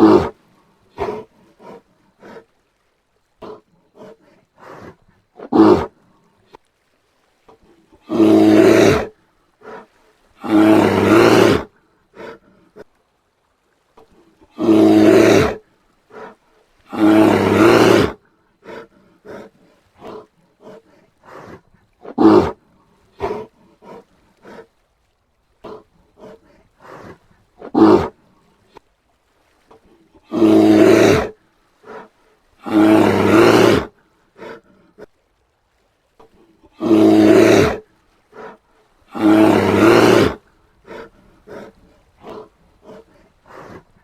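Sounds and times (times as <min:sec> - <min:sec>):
bear roaring: 0:00.0 - 0:02.4, 0:03.4 - 0:05.9, 0:08.0 - 0:12.4, 0:14.5 - 0:22.6, 0:23.2 - 0:24.7, 0:25.6 - 0:28.2, 0:30.2 - 0:31.3, 0:31.9 - 0:34.6, 0:36.7 - 0:37.8, 0:38.4 - 0:44.0
short bear calls: 0:00.0 - 0:02.5, 0:08.0 - 0:12.9, 0:14.5 - 0:24.7, 0:30.2 - 0:35.1, 0:38.4 - 0:44.0.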